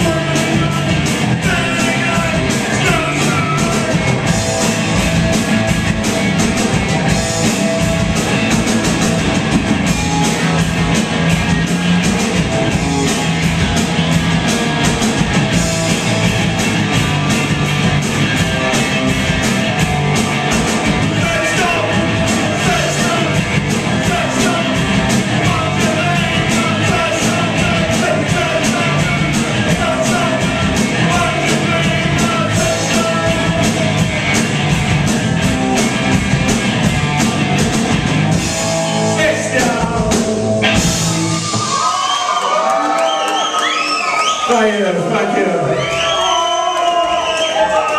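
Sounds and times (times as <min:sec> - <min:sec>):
person singing: 0:00.0 - 0:04.1, 0:21.0 - 0:33.9, 0:39.2 - 0:40.4
drum beat: 0:00.0 - 0:42.0
live rock band playing: 0:00.0 - 0:46.3.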